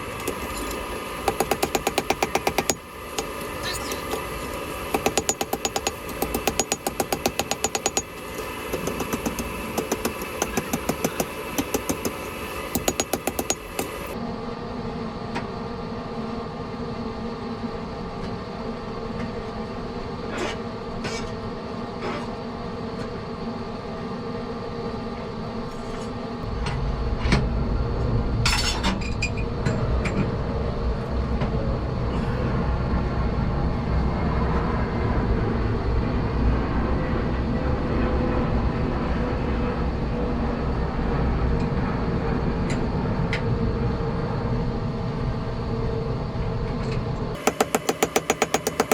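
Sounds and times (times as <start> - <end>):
shop machinery drone: 0.0 - 48.9
loud low rumble: 26.4 - 28.6.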